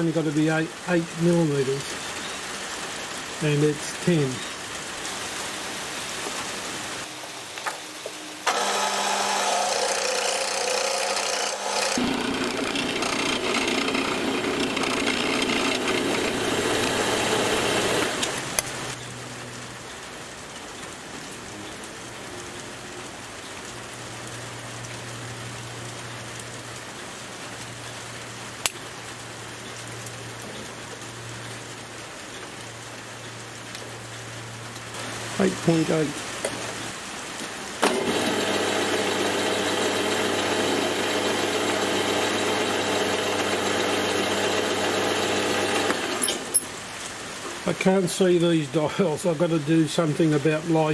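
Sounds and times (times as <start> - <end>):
lathe humming: 8.4 - 19.0, 37.8 - 46.8
metal lathe cutting: 8.4 - 19.0, 37.8 - 46.9.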